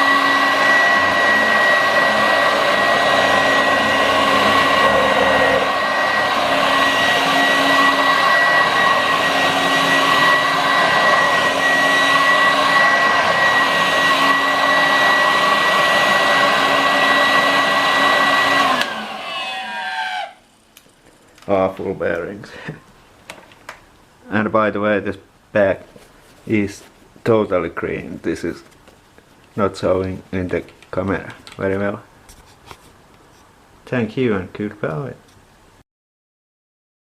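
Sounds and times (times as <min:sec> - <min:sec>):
vacuum motor winding down: 0:00.0 - 0:20.4
upright vacuum cleaner whining: 0:00.0 - 0:23.0.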